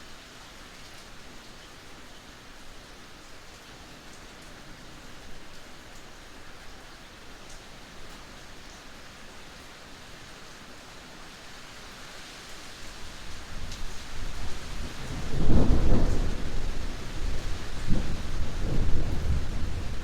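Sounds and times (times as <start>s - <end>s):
steady rain hissing: 0.0s - 20.0s
thunder rumbling: 15.1s - 20.0s.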